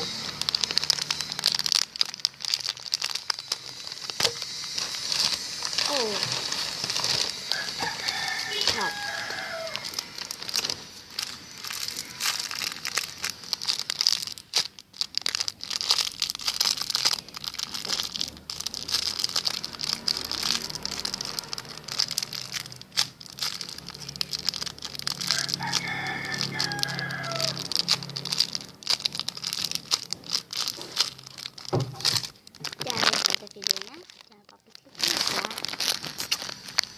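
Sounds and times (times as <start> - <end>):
plastic packaging crinkling: 0.0 - 36.9
rooster crowing: 7.3 - 10.6, 25.1 - 28.6.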